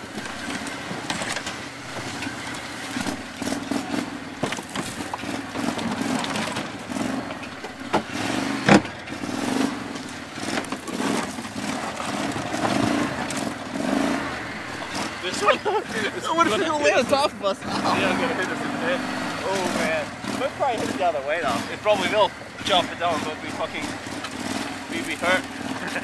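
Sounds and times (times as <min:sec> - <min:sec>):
sharp clicks and knocks: 0:00.0 - 0:15.2, 0:21.8 - 0:26.0
vehicle engine revving: 0:00.0 - 0:26.0.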